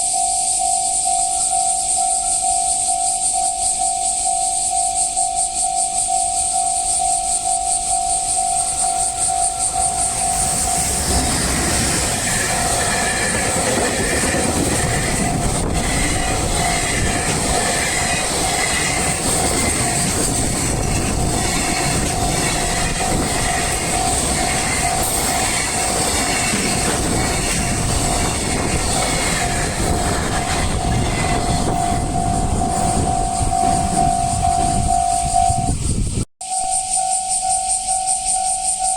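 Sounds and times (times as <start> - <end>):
level crossing warning bell: 0.0 - 35.8, 36.4 - 38.9
train wheels clattering over rails: 8.6 - 34.1.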